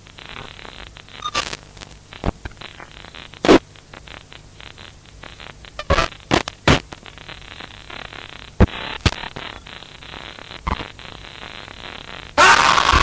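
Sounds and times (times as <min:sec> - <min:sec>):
crackling static: 0:00.0 - 0:13.0
sharp pops: 0:05.8 - 0:06.9.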